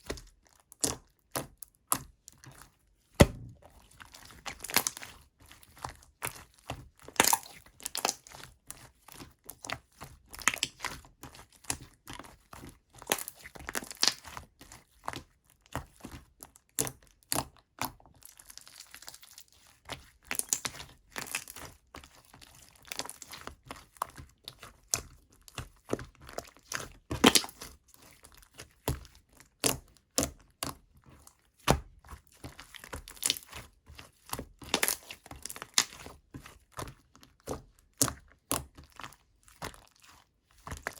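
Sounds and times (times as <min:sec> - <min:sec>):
slime squished by hand: 0:03.2 - 0:05.2, 0:06.4 - 0:08.4, 0:26.4 - 0:30.7, 0:34.2 - 0:40.9.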